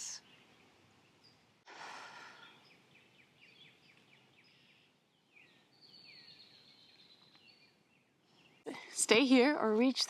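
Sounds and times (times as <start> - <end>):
faint birdsong: 0.0 - 10.0
breath out: 1.7 - 2.6.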